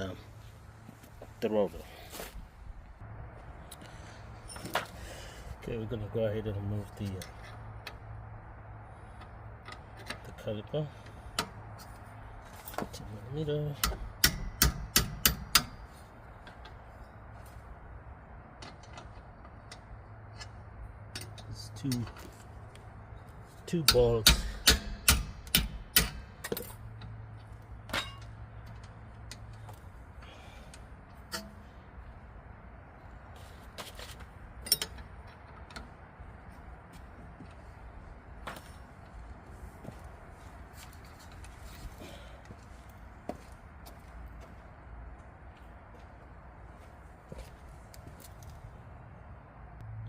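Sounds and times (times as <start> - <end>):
hand tools clicking and knocking: 13.7 - 16.8, 18.5 - 22.4, 23.7 - 27.2, 27.8 - 31.6, 34.6 - 35.9.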